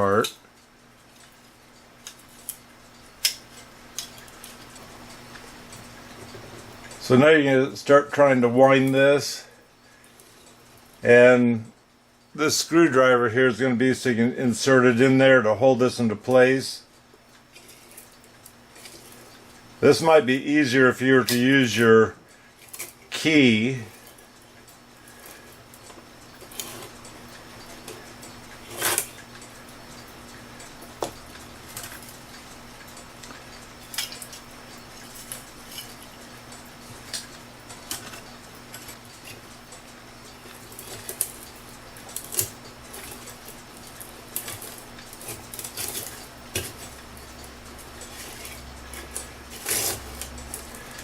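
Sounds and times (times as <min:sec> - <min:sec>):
clock winding metallic clicks: 0:22.6 - 0:51.0.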